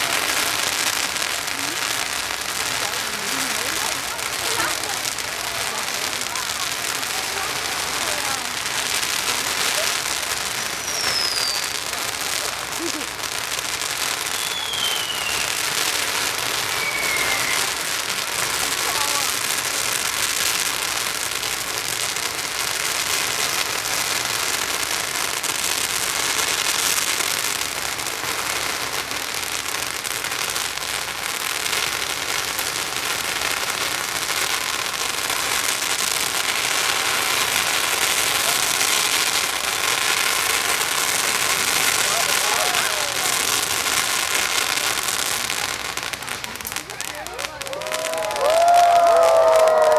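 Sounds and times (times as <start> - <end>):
firecrackers crackling: 0.0 - 49.9.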